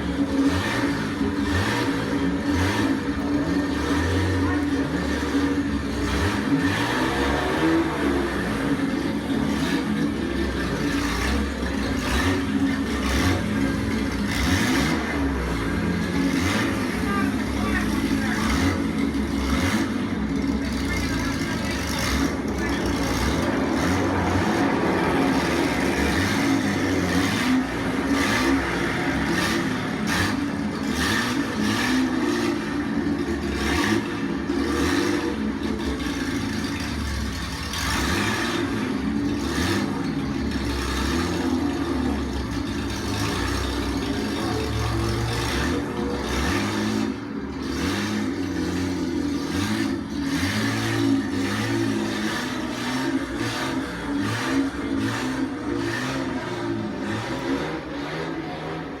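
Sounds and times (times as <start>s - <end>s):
racing car engines revving: 0.0s - 59.0s.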